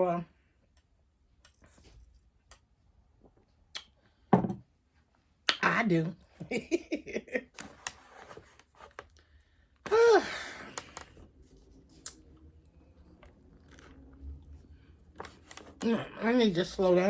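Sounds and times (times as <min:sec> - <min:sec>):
soft chewing with mouth clicks: 0:11.6 - 0:14.6.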